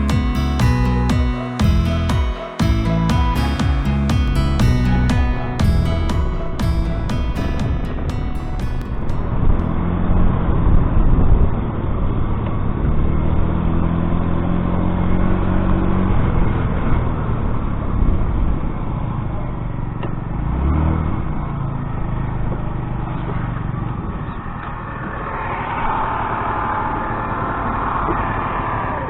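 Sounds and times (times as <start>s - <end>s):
road and wind noise: 4.4s - 29.0s.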